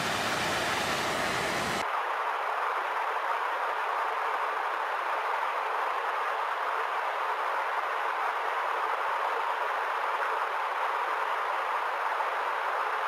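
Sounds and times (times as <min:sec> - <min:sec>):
rushing water: 0:00.0 - 0:02.1.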